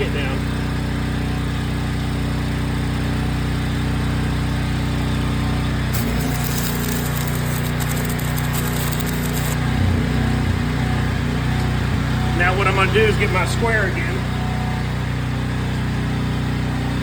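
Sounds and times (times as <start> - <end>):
welder engine running: 0.0 - 17.0
crackling welding arc: 5.9 - 9.8.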